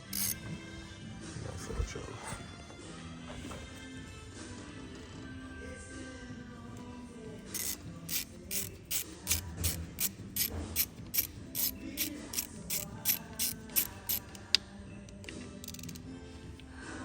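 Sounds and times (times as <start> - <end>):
hand ratchet clicking: 0.0 - 0.4, 7.5 - 14.6, 15.6 - 16.0.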